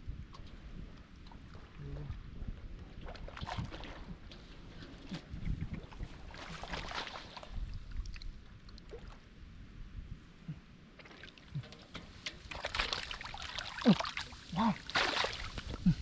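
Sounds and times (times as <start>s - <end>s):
muddy water splashing: 2.6s - 9.4s, 10.9s - 16.0s.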